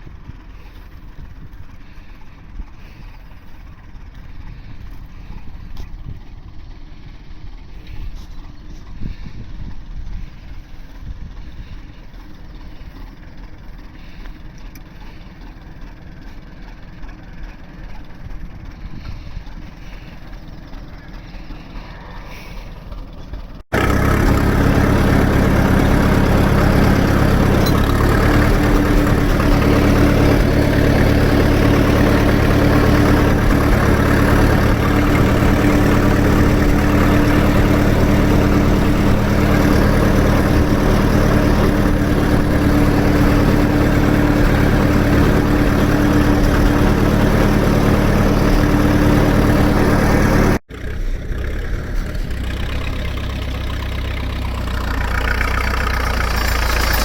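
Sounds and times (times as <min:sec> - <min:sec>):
tractor engine running: 0:00.0 - 0:57.0.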